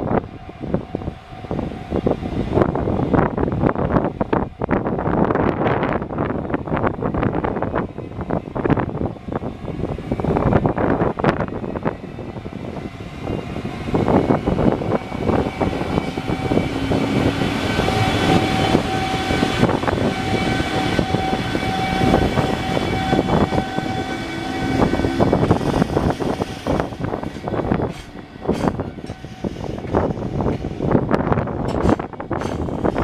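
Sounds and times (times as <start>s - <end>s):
steady whining tone: 0.0s - 33.0s
train wheels clattering over rails: 14.4s - 33.0s.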